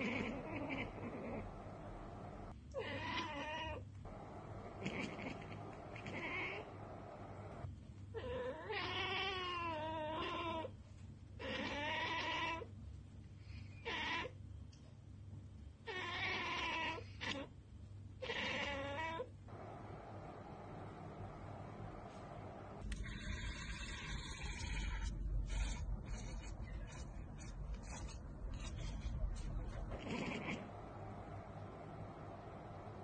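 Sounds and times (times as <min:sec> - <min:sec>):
cat chattering and chirping: 0:00.0 - 0:01.6, 0:04.6 - 0:06.8, 0:23.0 - 0:31.2.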